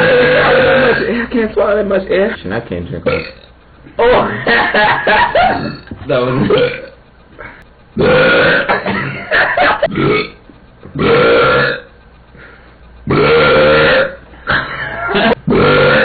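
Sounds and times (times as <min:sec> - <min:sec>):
man belching: 0:00.0 - 0:01.1, 0:03.1 - 0:03.5, 0:05.5 - 0:07.0, 0:08.0 - 0:09.2, 0:09.9 - 0:10.4, 0:11.0 - 0:11.9, 0:13.1 - 0:16.0.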